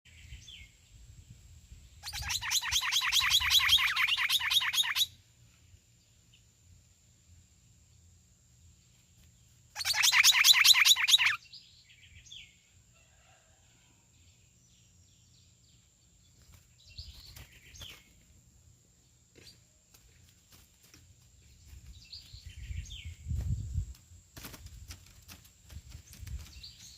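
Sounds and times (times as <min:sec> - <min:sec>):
bird singing fast repeated notes: 0:02.0 - 0:05.2, 0:09.7 - 0:11.5
faint bird calls: 0:09.8 - 0:11.4.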